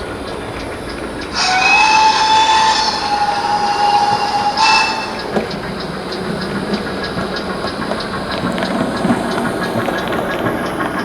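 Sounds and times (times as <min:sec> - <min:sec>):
faint locomotive exhaust beat: 0:00.0 - 0:11.0
steam whistle blast: 0:01.3 - 0:05.6.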